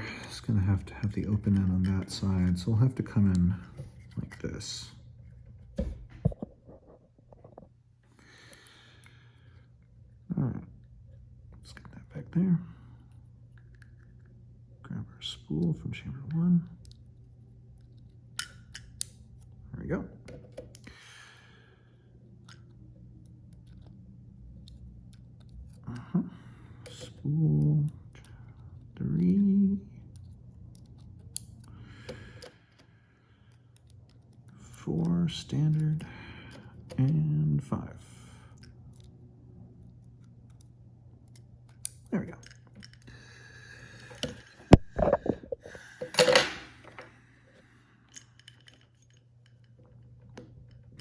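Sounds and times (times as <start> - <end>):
steady low hum: 0.0 - 51.0
small clicks of lock pins and tools: 8.3 - 9.9, 16.3 - 19.6, 22.3 - 37.3, 38.4 - 39.2, 39.8 - 43.2, 48.0 - 51.0
metal parts rattling: 41.7 - 43.1, 46.0 - 47.1, 48.1 - 51.0.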